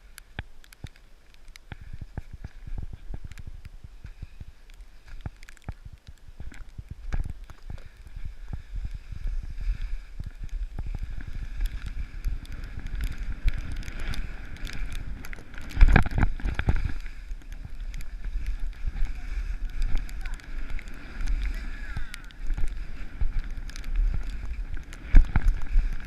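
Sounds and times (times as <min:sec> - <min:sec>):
wind buffeting microphone: 0:05.2 - 0:26.0
snowboard edges scraping snow: 0:07.6 - 0:26.0.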